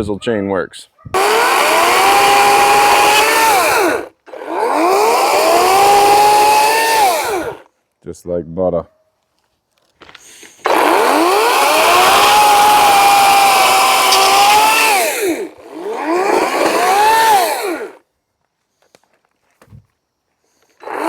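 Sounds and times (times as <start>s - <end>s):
electric chainsaw motor whine: 1.2s - 7.7s, 10.6s - 18.0s, 20.8s - 21.0s.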